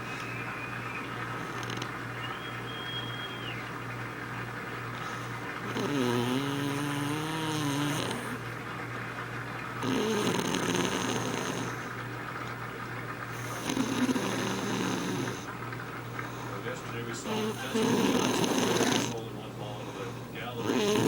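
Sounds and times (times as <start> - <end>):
woman snoring: 1.4 - 1.9, 5.6 - 8.4, 9.8 - 11.9, 13.3 - 15.5, 17.3 - 19.2, 20.6 - 21.0.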